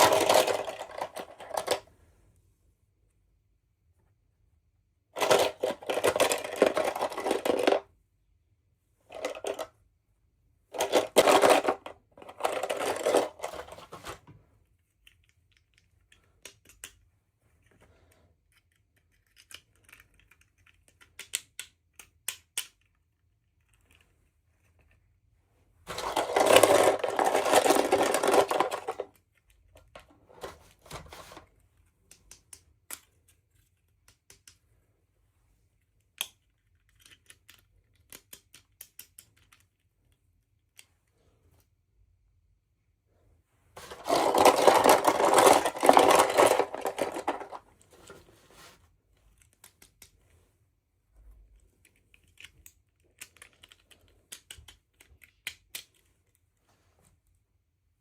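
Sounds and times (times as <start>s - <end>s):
small clicks and taps: 14.8s - 17.8s, 18.5s - 25.0s, 31.9s - 34.8s, 35.8s - 41.1s, 51.5s - 56.4s
packaging rustling: 25.9s - 29.1s, 43.8s - 48.8s.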